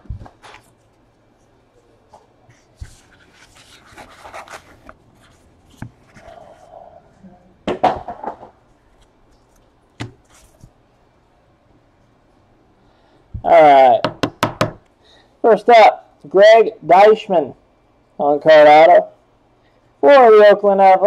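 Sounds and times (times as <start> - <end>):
cards rustling with clicks and taps: 2.1 - 6.6.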